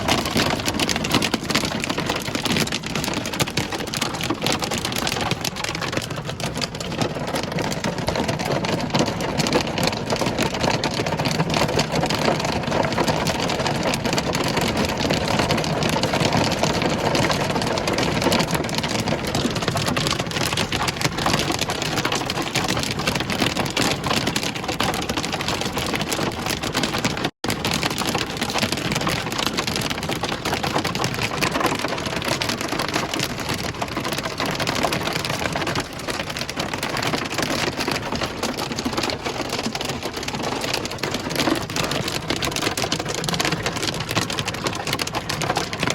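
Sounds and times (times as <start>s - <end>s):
heavy hail pelting down: 0.0s - 45.9s.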